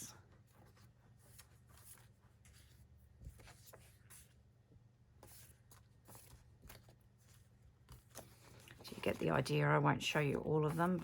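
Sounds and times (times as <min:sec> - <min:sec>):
plastic sheets rustling and ticking: 0:05.3 - 0:11.0.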